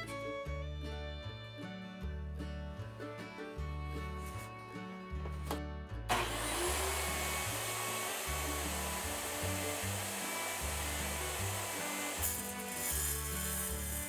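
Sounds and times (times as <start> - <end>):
country music: 0.0 - 14.0
power tool running: 6.1 - 14.0.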